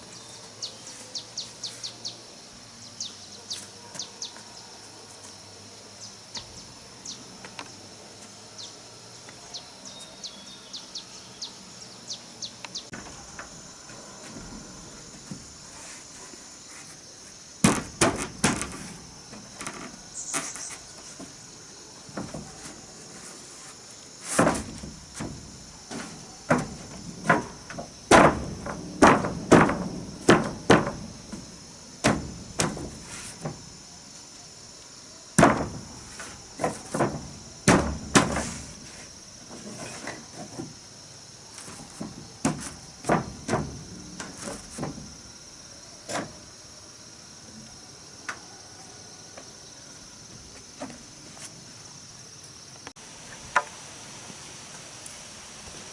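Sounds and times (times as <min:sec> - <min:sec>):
insects chirring: 0:00.0 - 0:55.9
wooden knocks and thuds: 0:17.6 - 0:21.4, 0:22.0 - 0:22.9, 0:24.3 - 0:33.8, 0:35.4 - 0:38.9, 0:39.5 - 0:40.8, 0:41.6 - 0:45.2.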